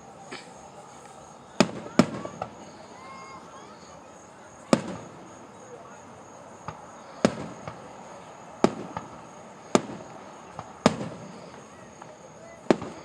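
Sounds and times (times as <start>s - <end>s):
fireworks bangs: 0.0s - 3.9s, 4.5s - 6.0s, 6.6s - 13.0s
faint firework pops: 0.3s - 2.7s, 4.6s - 5.4s, 6.6s - 7.9s, 8.6s - 13.0s.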